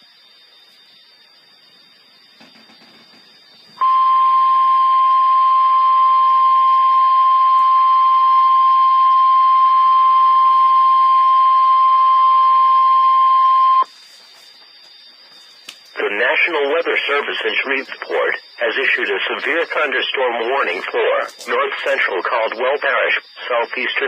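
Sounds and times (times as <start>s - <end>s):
steady warning alarm beep: 3.7s - 13.9s, 16.0s - 24.0s
faint radio hiss: 13.3s - 24.0s.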